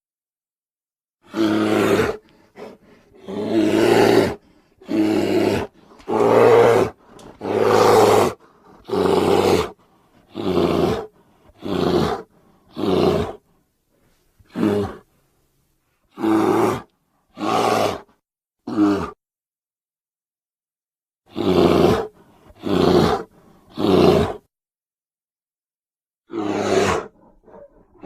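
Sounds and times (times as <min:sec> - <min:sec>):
person making roar-like vocal effects: 0:18.6 - 0:19.2.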